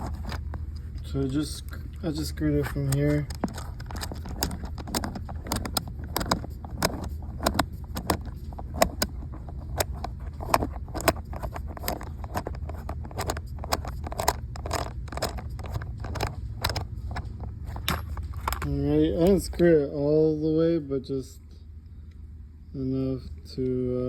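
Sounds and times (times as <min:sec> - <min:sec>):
small plastic parts clicking: 0:00.0 - 0:01.1, 0:02.6 - 0:19.5.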